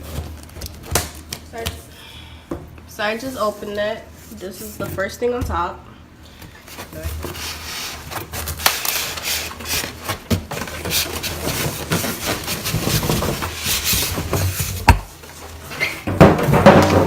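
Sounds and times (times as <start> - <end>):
cardboard and foam scraping: 6.8 - 14.8.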